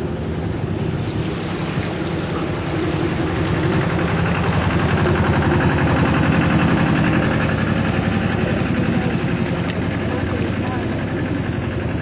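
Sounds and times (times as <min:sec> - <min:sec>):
diesel engine chugging: 0:00.0 - 0:12.0.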